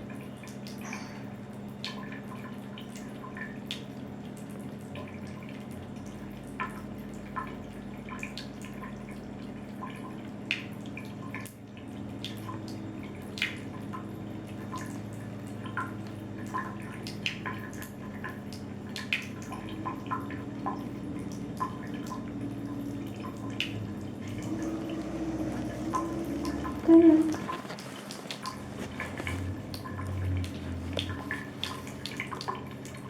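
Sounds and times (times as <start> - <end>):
water drips and splashes: 0.0 - 33.0
water running from a tap: 0.0 - 33.0
low hum: 20.6 - 27.8, 28.4 - 32.2.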